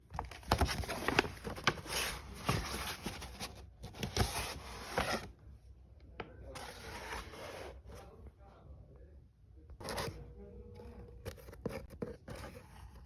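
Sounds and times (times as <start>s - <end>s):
packaging rustling and scraping: 0.1s - 5.3s.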